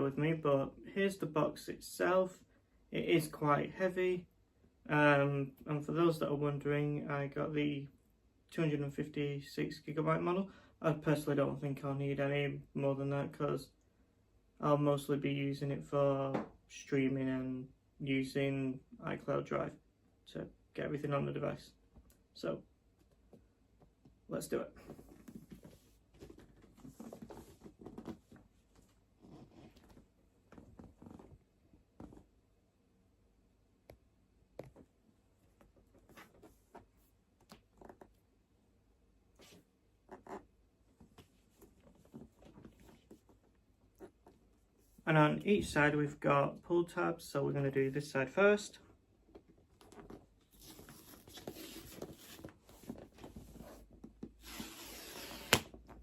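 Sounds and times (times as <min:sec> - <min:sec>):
cardboard tab tearing: 0:54.4 - 0:55.8.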